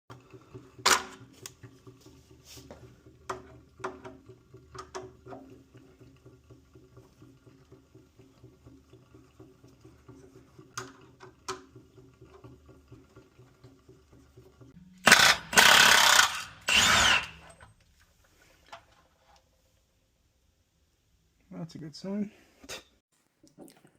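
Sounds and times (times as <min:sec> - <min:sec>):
power tool bursts: 0:14.9 - 0:17.7.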